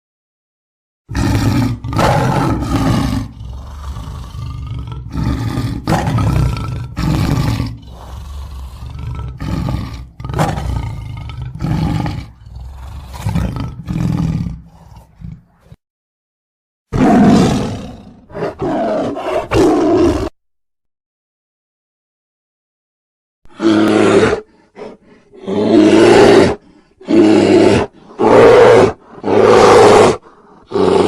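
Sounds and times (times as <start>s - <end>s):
tiger roaring and growling: 1.1s - 15.8s, 16.9s - 20.4s, 23.5s - 31.0s.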